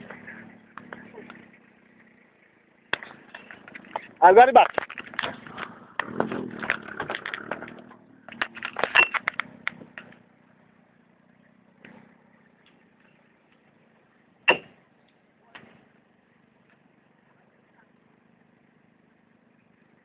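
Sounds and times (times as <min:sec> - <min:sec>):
vehicle engine running: 0:00.0 - 0:20.0
clattering knocks and rattles: 0:02.9 - 0:10.2.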